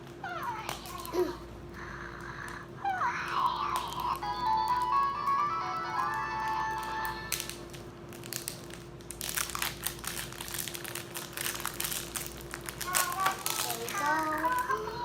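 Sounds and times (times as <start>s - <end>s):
plastic packaging crinkling: 3.6s - 15.0s
electronic toy melody: 4.2s - 7.4s.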